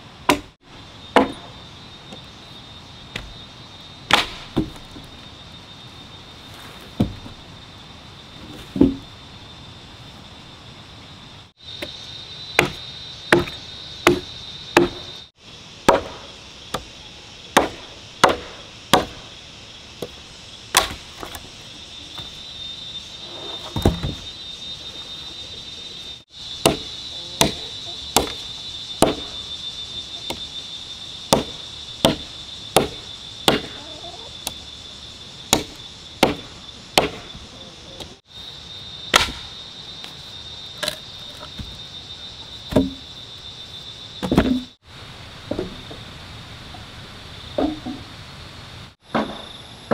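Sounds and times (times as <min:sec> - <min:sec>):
chopping strikes: 0:00.3 - 0:01.5, 0:04.1 - 0:04.9, 0:12.6 - 0:15.1, 0:15.9 - 0:16.9, 0:17.6 - 0:19.2, 0:20.7 - 0:21.4, 0:26.6 - 0:27.6, 0:28.2 - 0:28.4, 0:29.0 - 0:29.4, 0:31.3 - 0:33.8, 0:35.5 - 0:37.3, 0:39.1 - 0:39.5.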